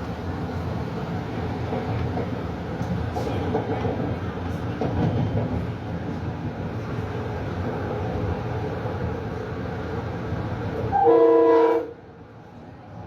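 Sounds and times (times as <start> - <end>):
rail clicks: 0.0 - 9.4
train rumbling: 0.0 - 13.0.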